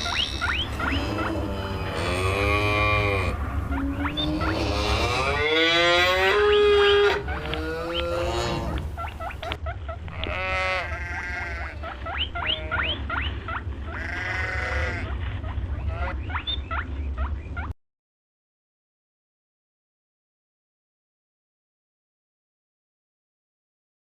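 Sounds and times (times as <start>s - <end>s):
farm animal long calls: 0.0s - 16.8s
low steady hum: 0.0s - 17.8s.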